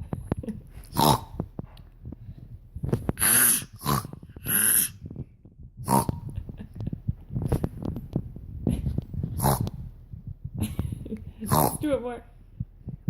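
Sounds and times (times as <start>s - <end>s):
dog breathy snorts: 8.8s - 9.8s.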